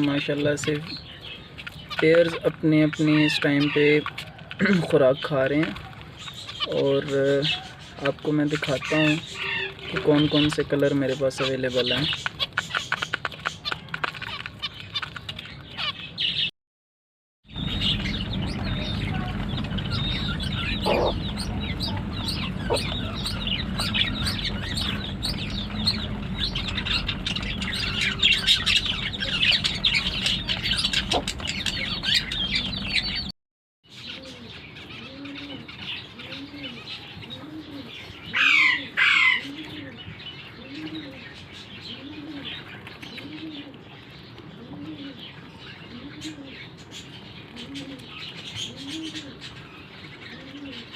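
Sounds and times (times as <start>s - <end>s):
doves cooing: 0.0s - 16.0s, 17.5s - 33.3s, 33.9s - 50.9s
finches chirping: 17.5s - 33.3s.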